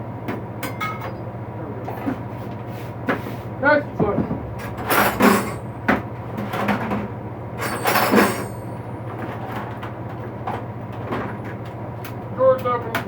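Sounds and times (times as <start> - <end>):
steady low hum: 0.0 - 13.0
tool knocking in tool box: 4.0 - 7.1.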